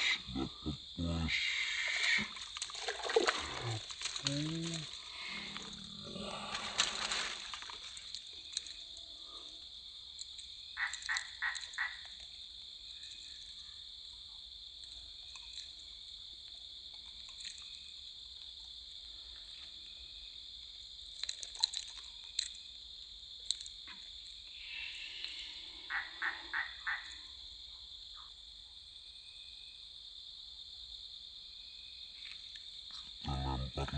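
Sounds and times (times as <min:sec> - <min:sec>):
frog croaking: 0:00.0 - 0:08.8, 0:10.6 - 0:12.2, 0:23.8 - 0:27.4, 0:32.9 - 0:33.9
insects droning: 0:00.0 - 0:33.9
sharp calls or clicks: 0:10.8 - 0:12.1.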